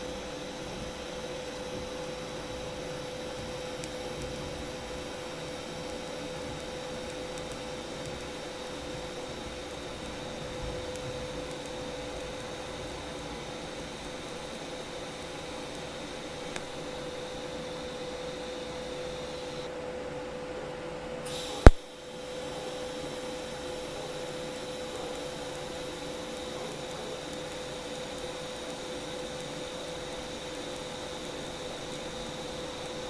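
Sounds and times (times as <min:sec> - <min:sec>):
welding arc hissing: 0:00.0 - 0:19.7, 0:21.3 - 0:33.0
faint hum: 0:00.0 - 0:33.0.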